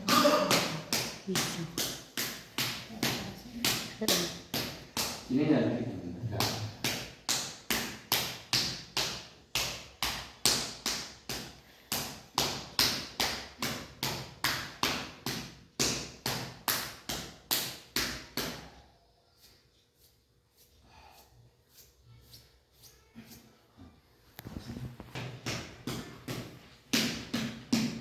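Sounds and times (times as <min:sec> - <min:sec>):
hand slapping on body: 0:00.0 - 0:05.3.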